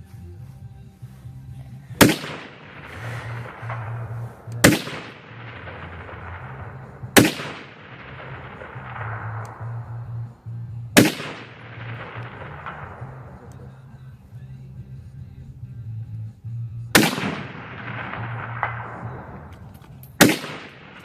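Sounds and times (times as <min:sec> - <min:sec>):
rifle shots with rolling echo: 0:02.0 - 0:14.2, 0:16.9 - 0:21.0.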